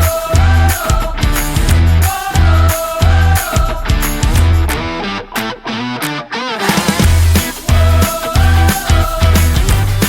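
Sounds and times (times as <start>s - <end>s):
rock music with distorted guitar: 0.0s - 10.0s.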